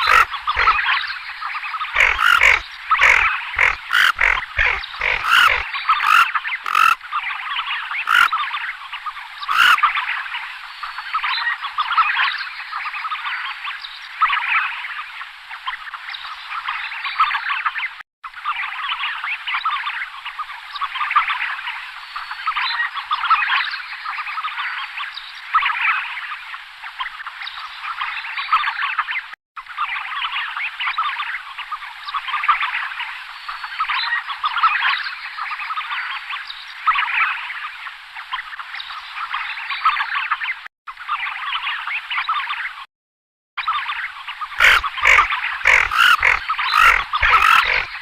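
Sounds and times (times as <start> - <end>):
ducks croaking calls: 0.0 - 0.9, 1.9 - 7.0, 8.0 - 8.3, 9.4 - 9.8, 44.6 - 48.0.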